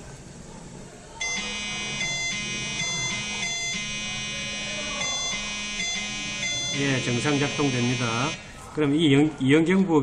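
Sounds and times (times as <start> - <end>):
two-tone electronic alarm: 1.2 - 8.6.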